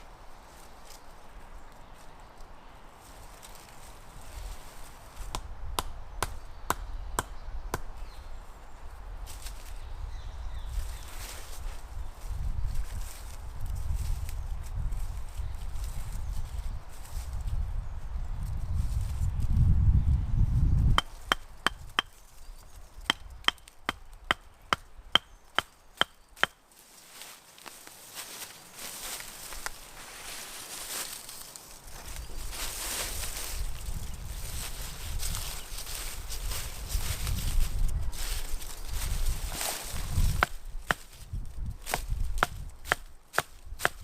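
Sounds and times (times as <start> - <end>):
tool striking sharp knocks: 21.0 - 22.1.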